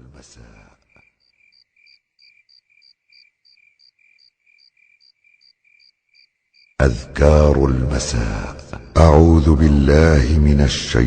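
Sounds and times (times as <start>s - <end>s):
crickets chirping: 0.4s - 6.8s.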